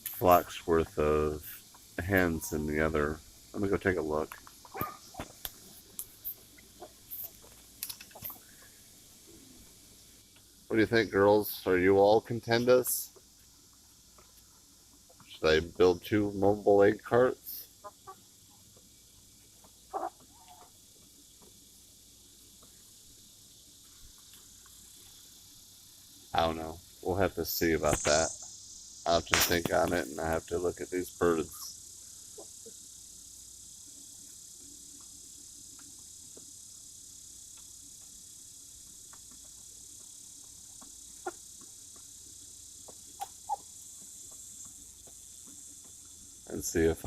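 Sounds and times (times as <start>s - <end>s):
insect chorus: 0.0s - 47.0s
chickens clucking softly: 1.3s - 8.6s, 17.5s - 21.7s, 40.4s - 42.1s, 42.8s - 45.2s
chicken call: 19.9s - 20.7s.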